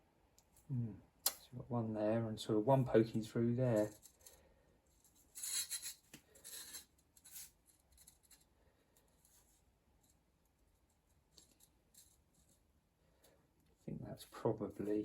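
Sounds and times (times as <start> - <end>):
metal parts scraping: 5.3 - 8.4.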